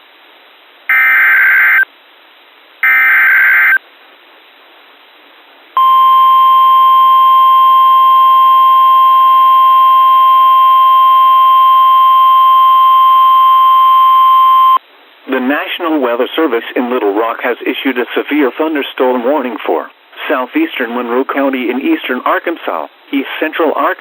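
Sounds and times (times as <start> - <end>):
steady single-pitch alarm tone: 5.8 - 14.8.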